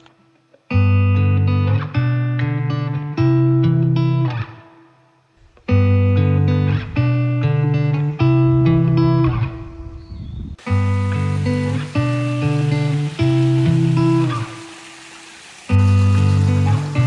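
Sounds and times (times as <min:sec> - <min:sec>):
guitar chords music: 0:00.0 - 0:14.8, 0:15.7 - 0:17.0.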